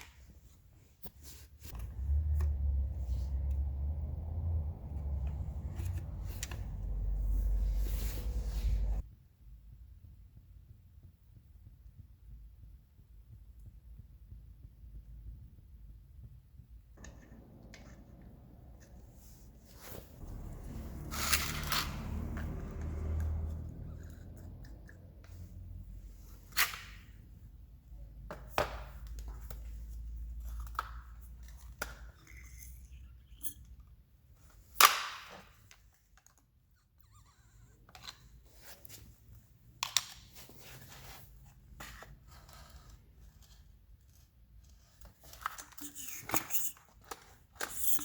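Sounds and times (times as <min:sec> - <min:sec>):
low handling rumble: 0:01.7 - 0:09.1, 0:17.0 - 0:26.3.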